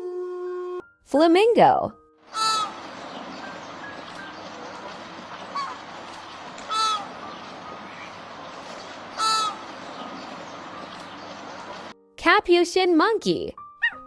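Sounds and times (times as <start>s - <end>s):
flamingo honking: 2.3s - 11.9s
steady background noise: 2.3s - 11.9s.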